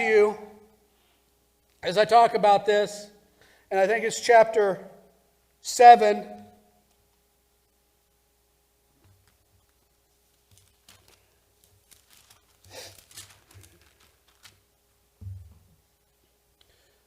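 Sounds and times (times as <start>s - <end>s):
paper pages rustling: 9.1s - 14.8s
soft thump: 15.2s - 15.8s.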